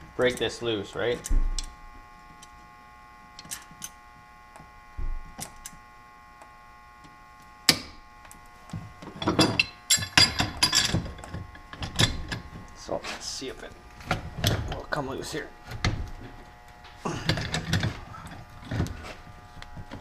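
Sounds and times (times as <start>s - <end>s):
metal clanking and rattling: 9.1s - 12.5s
hand tools clicking on metal: 9.2s - 12.5s, 16.9s - 18.9s.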